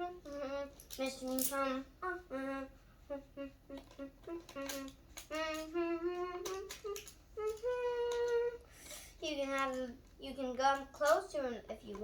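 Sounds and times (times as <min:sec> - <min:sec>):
child humming a tune: 0:00.0 - 0:09.6.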